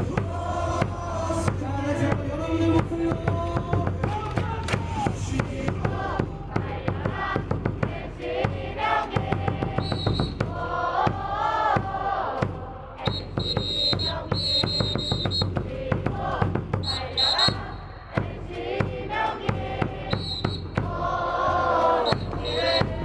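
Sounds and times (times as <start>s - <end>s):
crowd chanting and singing: 0.0s - 23.0s
music from stadium speakers: 0.0s - 23.0s
fast rhythmic clapping: 3.8s - 5.2s.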